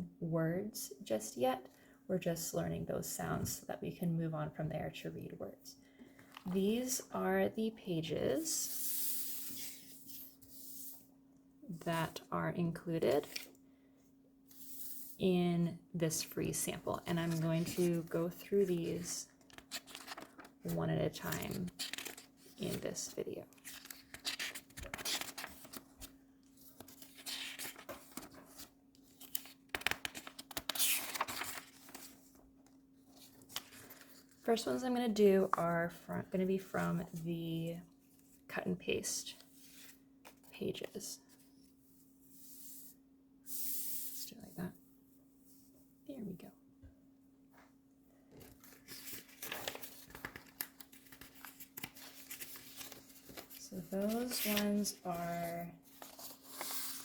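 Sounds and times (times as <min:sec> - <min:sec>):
paper rustling and sliding: 0:19.4 - 0:20.6, 0:23.5 - 0:32.4, 0:48.4 - 0:54.9, 0:55.9 - 0:57.0.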